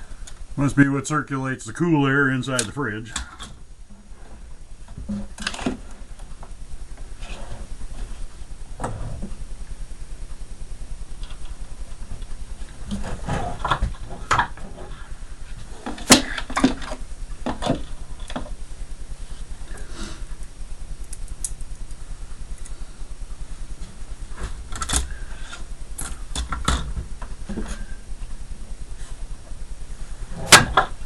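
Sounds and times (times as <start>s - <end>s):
steady low hum: 0.0s - 31.0s.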